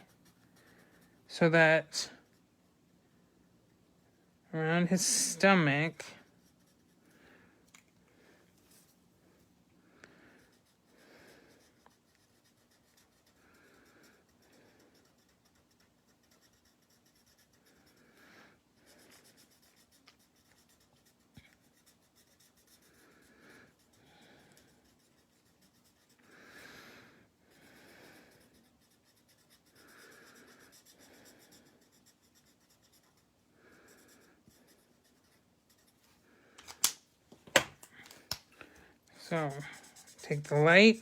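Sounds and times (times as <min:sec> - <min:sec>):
marker rubbing on cardstock: 0:10.4 - 0:18.0, 0:18.8 - 0:26.3, 0:28.1 - 0:33.2, 0:39.2 - 0:41.0.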